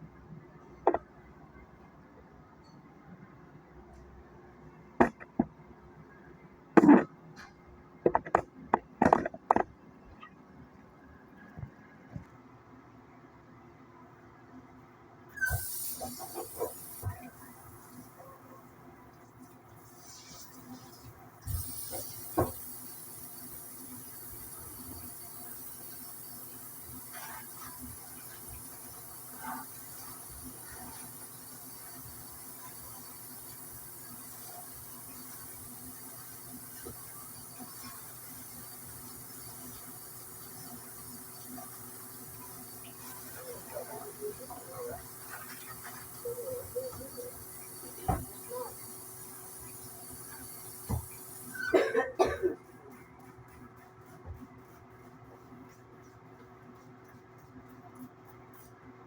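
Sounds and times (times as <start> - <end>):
hard objects knocking: 5.0 - 5.6, 6.8 - 7.1, 8.0 - 9.8.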